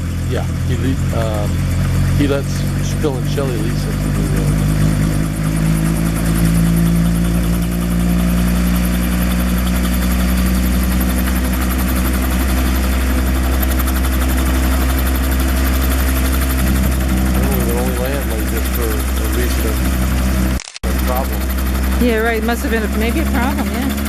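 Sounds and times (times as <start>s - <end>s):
helicopter engine and rotor idling: 0.0s - 24.0s.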